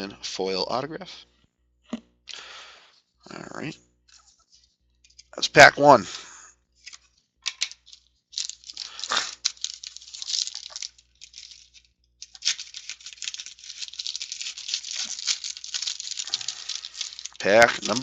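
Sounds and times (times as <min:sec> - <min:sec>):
card packs rustling and crinkling: 0:07.6 - 0:18.0.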